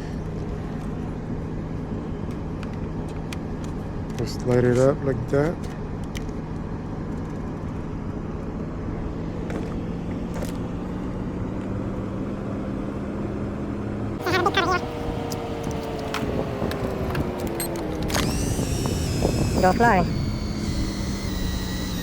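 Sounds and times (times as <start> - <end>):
vehicle engine idling: 13.6 - 22.0.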